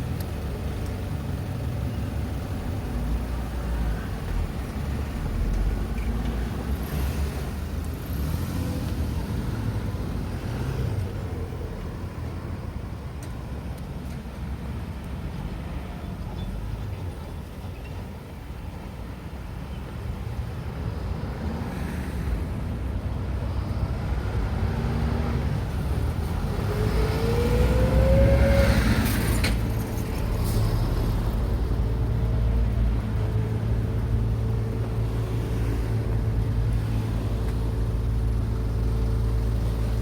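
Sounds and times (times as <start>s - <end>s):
road traffic passing: 0.0s - 40.0s
vehicle pulling away whining: 23.5s - 40.0s.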